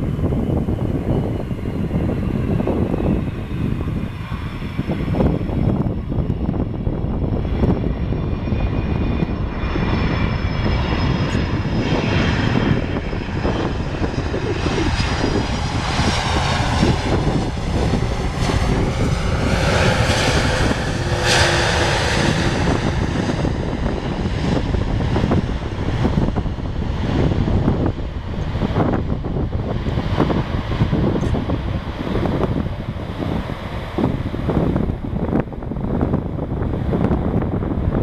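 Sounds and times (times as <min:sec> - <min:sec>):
jet engines whining: 0:00.0 - 0:38.0
wind buffeting microphone: 0:00.0 - 0:38.0
jet rushing past: 0:07.2 - 0:37.0.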